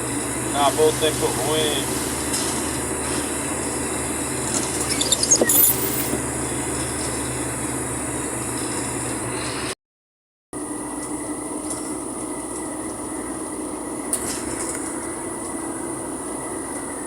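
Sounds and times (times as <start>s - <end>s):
vehicle engine and road noise: 0.0s - 9.8s
short squeaks: 4.8s - 6.2s.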